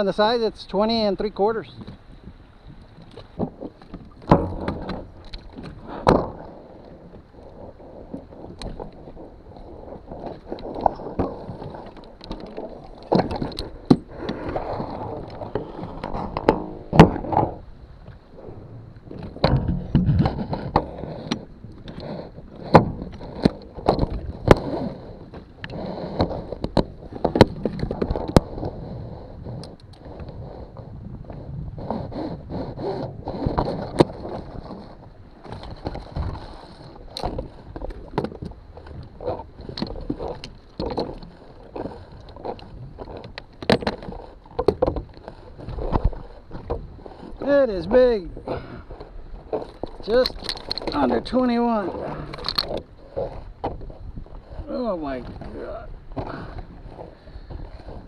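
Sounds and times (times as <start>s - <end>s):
knocks and scrapes aboard kayak: 0.0s - 58.0s.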